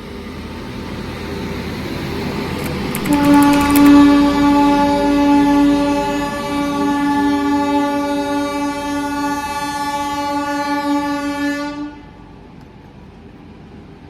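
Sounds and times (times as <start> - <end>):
locomotive air horn blast: 3.0 - 12.2.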